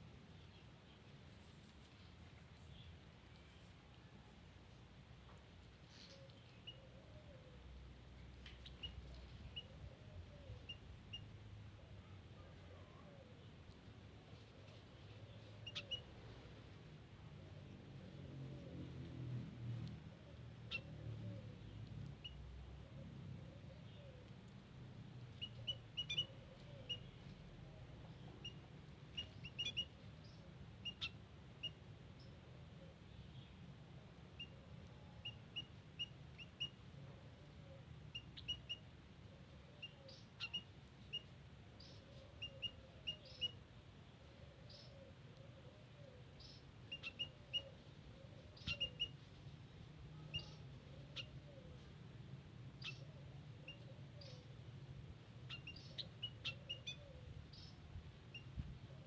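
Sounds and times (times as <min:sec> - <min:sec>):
birds chirping: 0:15.1 - 0:16.2, 0:25.2 - 0:32.4, 0:39.6 - 0:43.6, 0:44.2 - 0:51.9, 0:52.8 - 0:54.6, 0:55.4 - 0:59.0.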